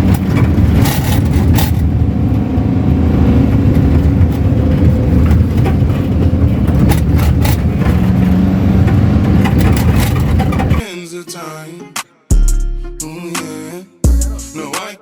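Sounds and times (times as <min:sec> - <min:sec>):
moving car rumble: 0:00.0 - 0:10.8
short knocks or rattles: 0:03.8 - 0:10.8.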